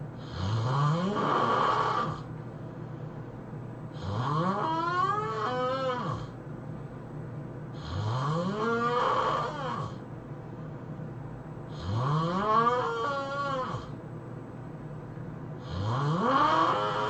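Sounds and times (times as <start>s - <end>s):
person snoring loudly: 0.2s - 2.3s, 4.0s - 6.4s, 7.8s - 10.0s, 11.7s - 14.0s, 15.6s - 17.0s.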